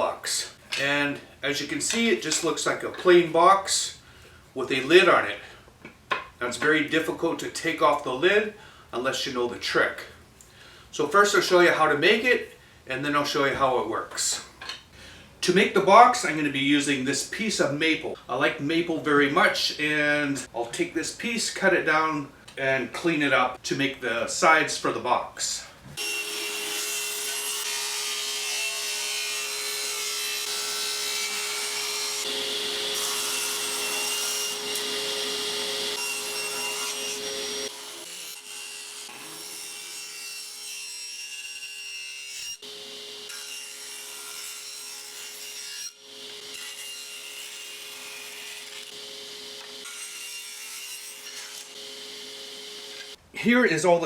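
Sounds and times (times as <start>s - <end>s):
blade cutting wood: 26.0s - 53.2s
woodworking machine motor hum: 51.6s - 53.2s.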